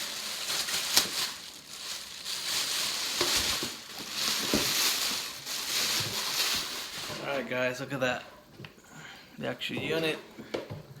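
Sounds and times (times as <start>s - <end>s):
plastic bag crinkling: 0.0s - 7.6s.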